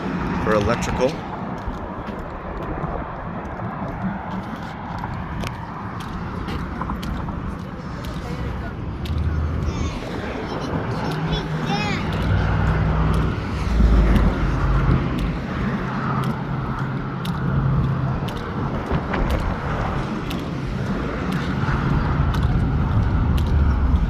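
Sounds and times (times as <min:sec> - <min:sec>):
highway traffic passing: 0:00.0 - 0:24.0
heavy vehicle rumbling by: 0:06.3 - 0:24.0.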